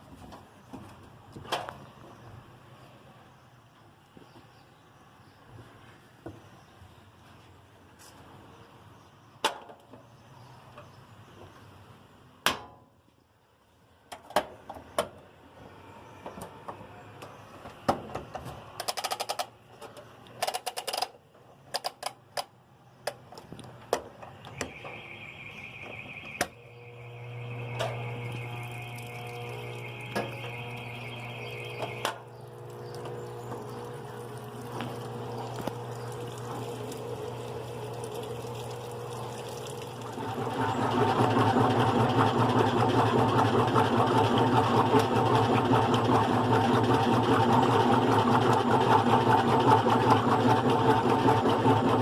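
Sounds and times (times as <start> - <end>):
washing machine hum: 24.6 - 52.0.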